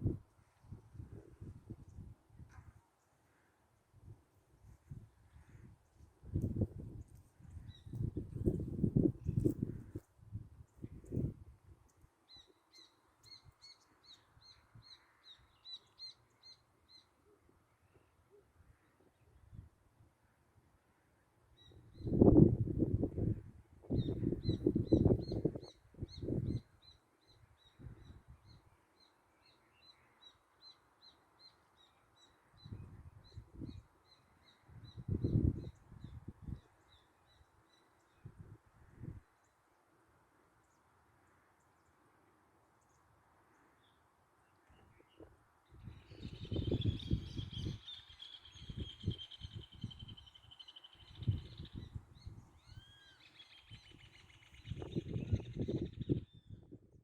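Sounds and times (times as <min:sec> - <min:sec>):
bird chirping: 0:12.3 - 0:18.2, 0:43.8 - 0:56.7.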